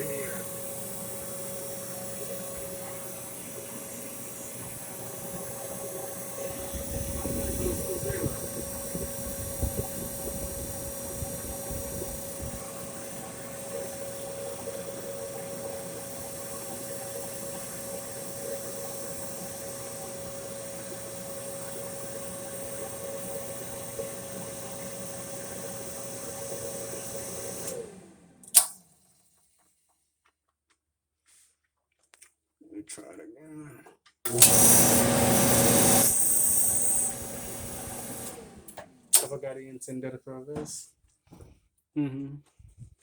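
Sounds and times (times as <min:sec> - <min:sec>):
constant whine: 0:00.0 - 0:13.7
dryer motor and fan humming: 0:00.0 - 0:28.7, 0:34.3 - 0:39.4
motor winding down: 0:00.0 - 0:28.8, 0:34.3 - 0:39.3.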